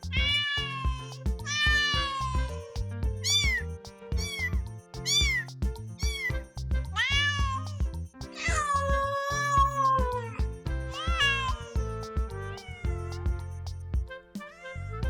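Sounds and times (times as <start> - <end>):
background music with steady beat: 0.0 - 14.6
kittens meowing: 0.1 - 2.5, 3.2 - 3.6, 5.0 - 5.4, 7.0 - 7.8, 8.4 - 10.4, 11.0 - 11.7, 12.6 - 13.0.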